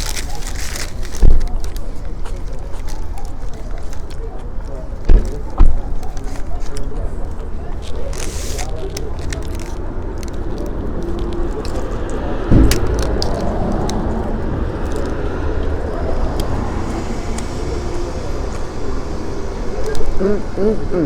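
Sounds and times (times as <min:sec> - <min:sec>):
steady outdoor rumble: 0:00.0 - 0:21.0
loud thump: 0:12.4 - 0:15.6.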